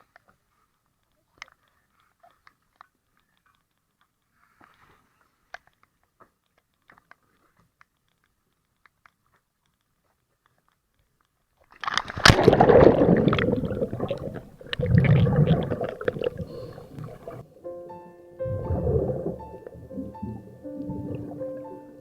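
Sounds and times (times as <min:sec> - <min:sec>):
faint clicks: 0:00.0 - 0:17.4
air bubbling underwater: 0:12.0 - 0:17.5, 0:18.4 - 0:22.0.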